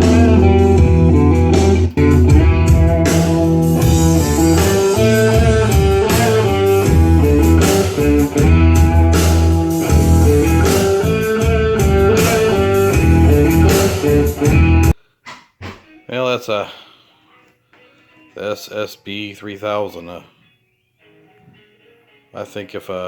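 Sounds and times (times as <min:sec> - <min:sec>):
electric guitar music from speaker: 0:00.0 - 0:15.0, 0:19.8 - 0:22.9.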